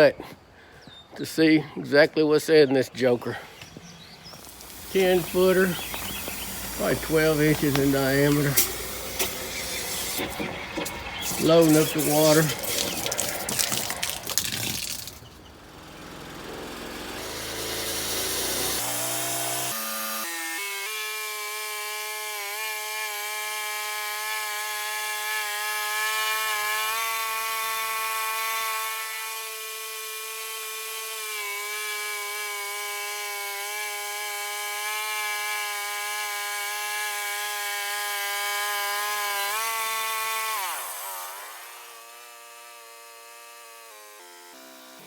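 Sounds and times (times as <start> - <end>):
sawmill engine whining: 3.0 - 21.0
saw blade cutting log: 3.2 - 45.0.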